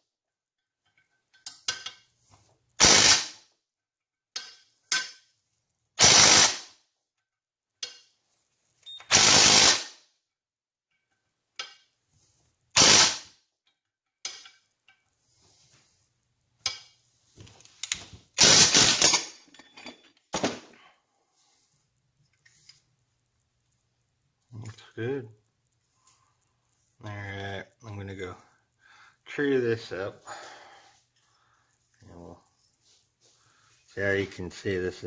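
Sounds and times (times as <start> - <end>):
parts clicking and knocking: 0.8 - 2.2, 4.3 - 5.3, 7.8 - 8.2, 14.2 - 15.1, 16.6 - 20.8
power tool bursts: 2.8 - 3.4, 6.0 - 6.6, 9.1 - 9.9, 12.8 - 13.2, 18.4 - 19.2.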